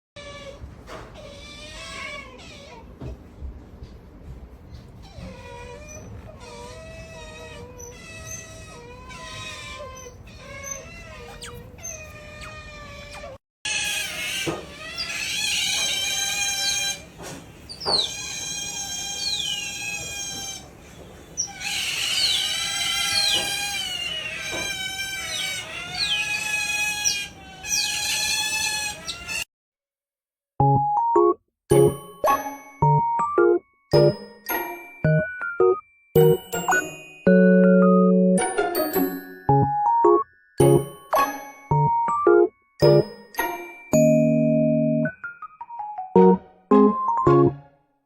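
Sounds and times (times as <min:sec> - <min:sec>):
otter whining squeals: 0:05.2 - 0:17.1, 0:21.4 - 0:29.4.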